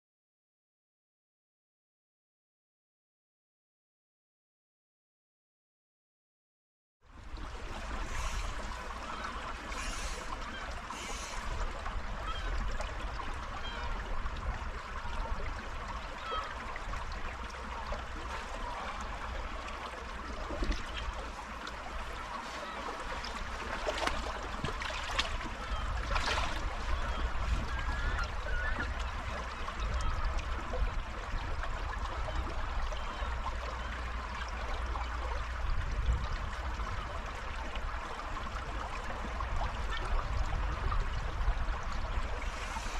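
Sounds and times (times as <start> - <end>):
river water rushing: 7.4 - 29.8.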